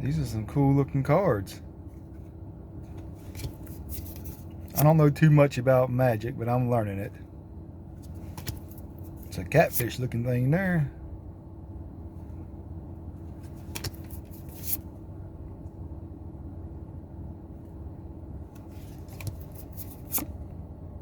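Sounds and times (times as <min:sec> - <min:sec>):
steady low hum: 0:00.0 - 0:21.0
trading cards rustling: 0:02.9 - 0:04.9, 0:08.0 - 0:09.9, 0:13.4 - 0:14.9, 0:18.6 - 0:20.4.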